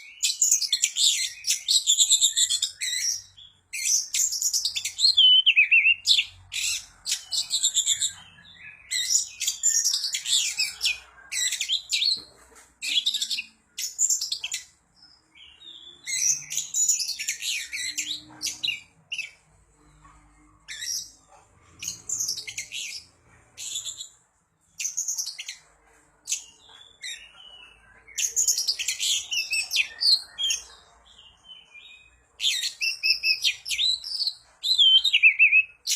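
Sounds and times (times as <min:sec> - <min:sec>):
bird singing whistles and chatter: 0:32.4 - 0:35.9.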